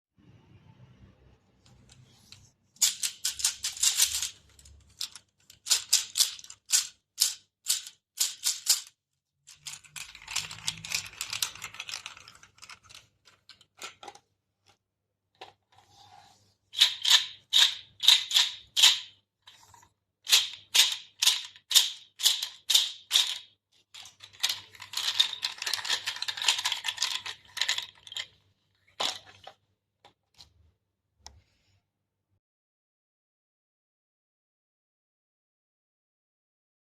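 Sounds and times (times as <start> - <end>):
percussion clacks and rattling: 24.0 - 28.3.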